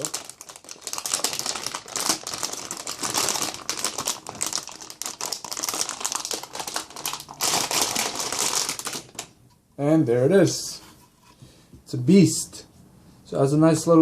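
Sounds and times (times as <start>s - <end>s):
packaging rustling and crackling: 0.0s - 9.4s.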